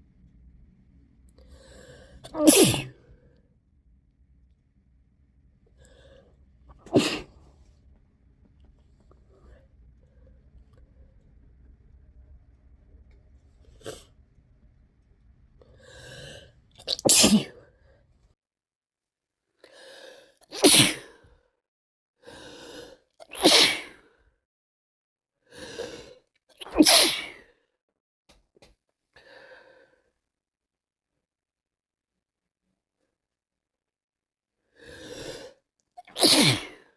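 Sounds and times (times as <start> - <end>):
faint breath: 1.4 - 2.3, 5.7 - 6.4, 8.8 - 11.3, 15.6 - 16.6, 34.7 - 35.6
breathy build-up before sneeze: 1.6 - 3.2, 5.8 - 7.6, 15.8 - 18.0, 20.5 - 21.2, 23.3 - 24.1, 26.0 - 27.4, 34.9 - 36.9
person sneezing: 2.2 - 3.0, 6.8 - 7.4, 16.9 - 17.6, 20.5 - 21.2, 23.3 - 24.0, 26.6 - 27.4, 36.1 - 36.8.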